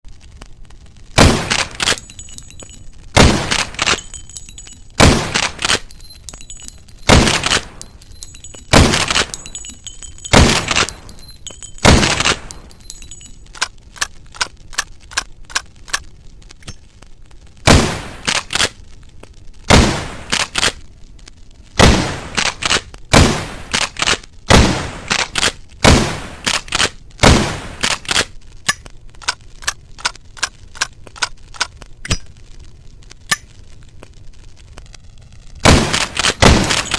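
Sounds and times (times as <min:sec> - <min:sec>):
rifle shots echoing: 0:01.2 - 0:13.3, 0:17.7 - 0:18.6, 0:21.8 - 0:28.2, 0:35.6 - 0:36.9
rounds being loaded clicks: 0:01.5 - 0:02.9, 0:03.5 - 0:16.0
metallic clicks of rifle action: 0:03.5 - 0:16.0, 0:18.2 - 0:18.8, 0:20.3 - 0:20.8, 0:22.4 - 0:22.9, 0:25.1 - 0:25.6, 0:26.4 - 0:27.0, 0:27.8 - 0:32.3, 0:35.9 - 0:36.9.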